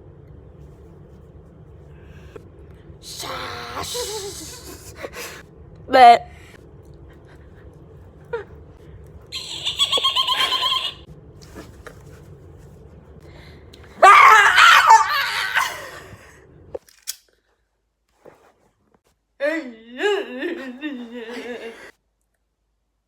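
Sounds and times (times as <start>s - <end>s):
high fluttering vocal squeal: 3.1s - 5.0s, 9.4s - 11.1s
people laughing and shrieking: 9.4s - 11.1s, 14.0s - 16.2s.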